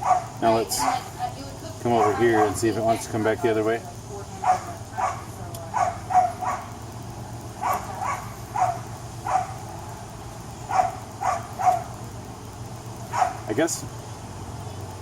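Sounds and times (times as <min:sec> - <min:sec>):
dog barking: 0:00.0 - 0:01.1, 0:01.9 - 0:02.7, 0:04.4 - 0:06.8, 0:07.6 - 0:09.6, 0:10.7 - 0:11.9, 0:13.1 - 0:13.5
steady low hum: 0:00.0 - 0:15.0.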